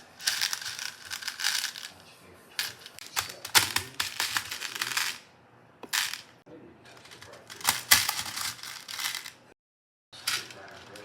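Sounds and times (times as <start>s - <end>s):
beads clicking and rattling: 0.2s - 1.9s.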